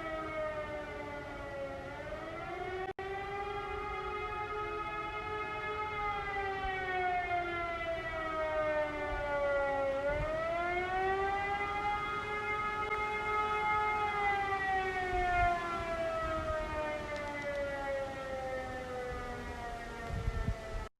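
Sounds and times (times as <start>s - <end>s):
siren rising and falling wail: 0.0s - 20.9s.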